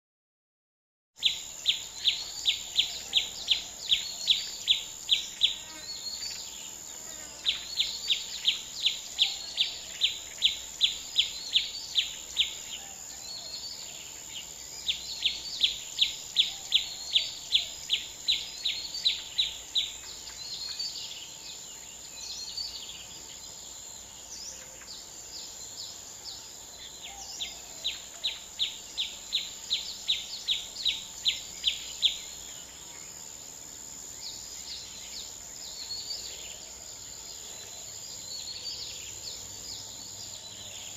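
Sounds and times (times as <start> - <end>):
bird chirps: 1.2 - 33.1
high insect drone: 1.2 - 40.9.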